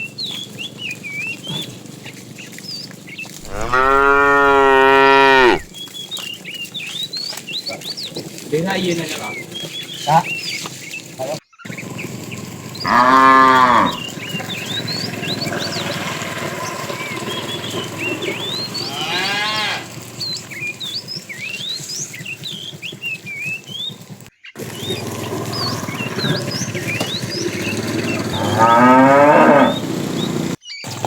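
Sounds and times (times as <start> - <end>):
small birds chirping: 0.0 - 31.0
cows mooing: 3.4 - 5.7, 11.9 - 21.6, 24.6 - 30.6.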